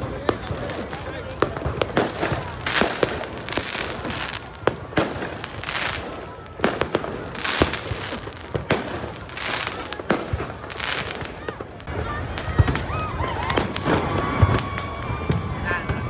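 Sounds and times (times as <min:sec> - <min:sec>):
firework bangs: 0:00.0 - 0:16.0
firework crackling: 0:00.0 - 0:16.0.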